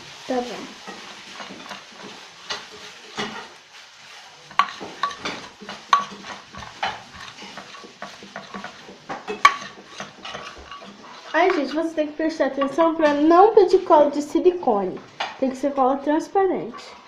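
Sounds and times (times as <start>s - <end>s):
spoon scraping and clinking container: 4.5s - 11.9s.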